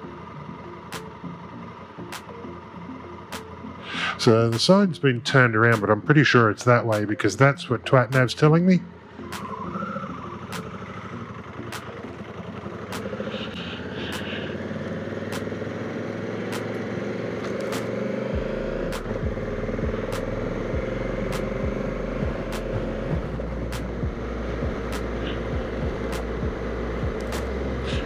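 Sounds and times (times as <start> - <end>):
motorcycle engine accelerating: 9.2 - 28.0.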